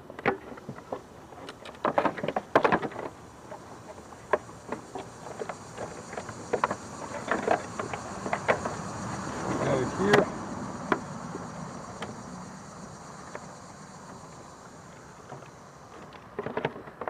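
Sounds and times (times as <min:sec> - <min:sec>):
clicks and knocks of engine parts: 0:00.0 - 0:17.0.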